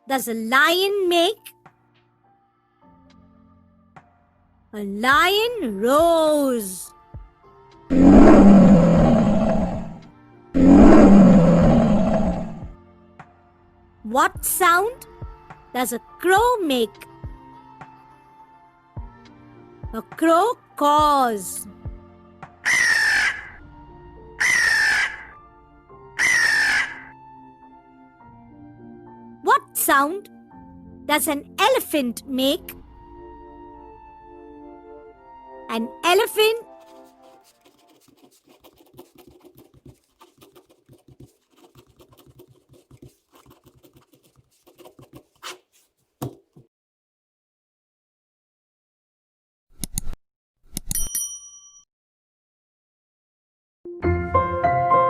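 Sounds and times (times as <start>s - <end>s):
soft background music: 0.0s - 44.8s, 53.9s - 55.0s
elephant low rumbling: 7.9s - 10.0s, 10.6s - 12.6s
crow cawing: 22.7s - 23.6s, 24.4s - 25.4s, 26.2s - 27.1s.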